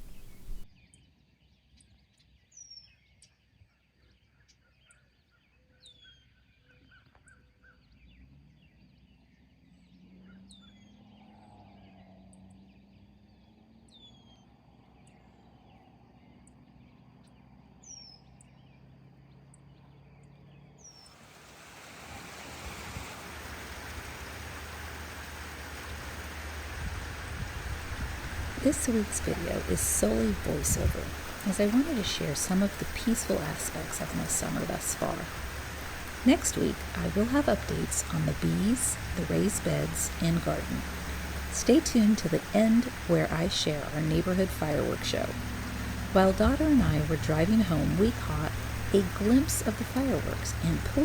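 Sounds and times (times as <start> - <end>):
rain hiss: 0.0 - 0.7, 20.9 - 51.0
faint lower bird calls: 0.0 - 0.9
birds chirping: 0.0 - 1.0, 25.1 - 51.0.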